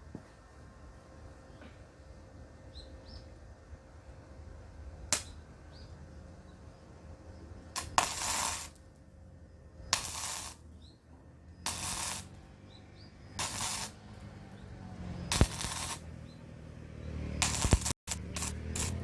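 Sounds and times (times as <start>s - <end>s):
sharp welder click: 5.1s - 5.4s, 7.8s - 8.8s, 9.9s - 10.6s, 11.7s - 12.4s, 13.4s - 14.0s, 15.3s - 16.1s, 17.4s - 19.0s
electric welder hissing: 7.7s - 8.8s, 9.9s - 10.6s, 11.6s - 12.5s, 13.3s - 14.1s, 15.0s - 16.2s, 17.3s - 19.0s.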